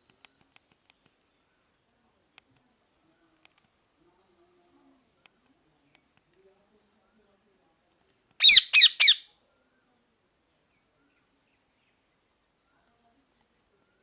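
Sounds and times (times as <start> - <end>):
parrot squawking: 8.4 - 9.2.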